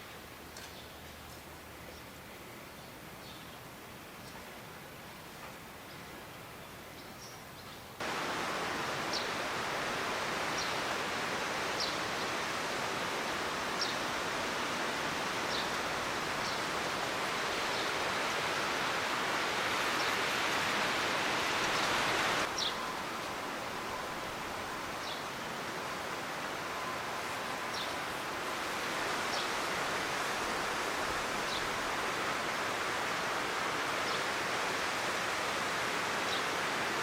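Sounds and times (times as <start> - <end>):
rain falling: 8.0 - 37.0.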